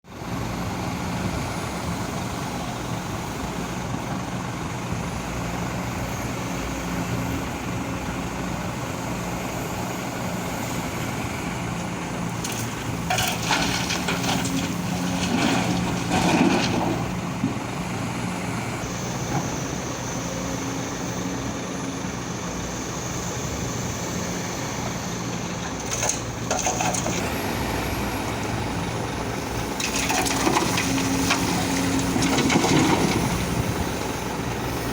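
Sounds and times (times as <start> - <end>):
excavator diesel engine running: 0.1 - 34.9
bucket scraping earth and rock: 12.4 - 17.2, 25.7 - 27.4, 29.8 - 33.6.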